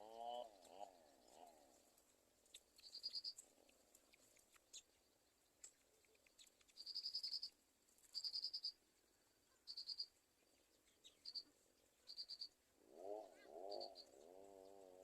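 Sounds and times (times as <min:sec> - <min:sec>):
high-pitched trilled chirping: 0:08.2 - 0:08.8, 0:09.7 - 0:10.1, 0:12.1 - 0:12.5.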